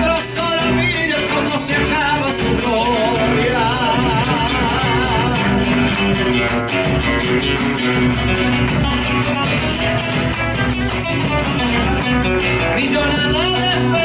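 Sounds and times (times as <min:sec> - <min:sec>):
acoustic guitars strumming: 0:00.0 - 0:14.0
bass line: 0:00.0 - 0:14.0.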